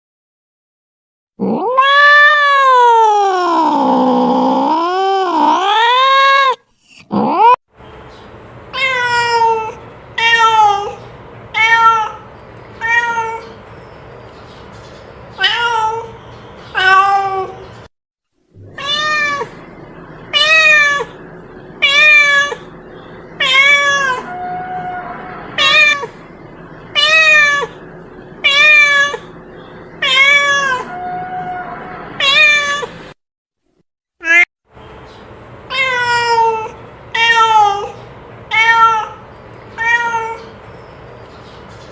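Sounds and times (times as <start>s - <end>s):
cat meowing: 1.4s - 7.6s, 8.8s - 11.0s, 11.6s - 13.6s, 15.4s - 17.6s, 18.6s - 19.6s, 20.3s - 21.2s, 21.8s - 22.7s, 23.4s - 26.2s, 27.0s - 27.8s, 28.4s - 29.4s, 30.0s - 33.0s, 34.2s - 34.5s, 35.7s - 39.2s, 39.8s - 40.5s.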